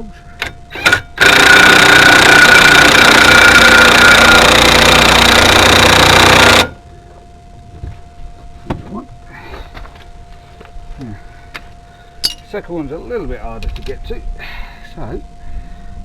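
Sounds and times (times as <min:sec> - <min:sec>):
impact wrench hammering a bolt: 0:00.4 - 0:06.8, 0:12.2 - 0:12.5.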